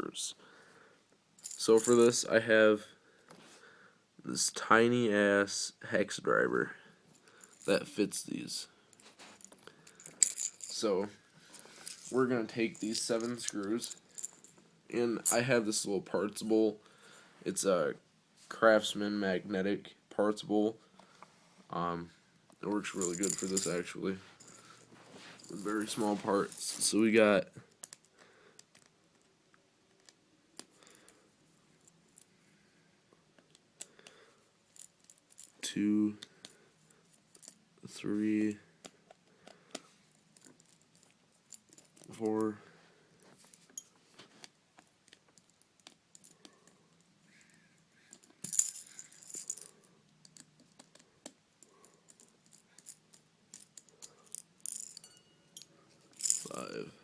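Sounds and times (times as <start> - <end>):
metallic rattle: 22.9 - 23.8.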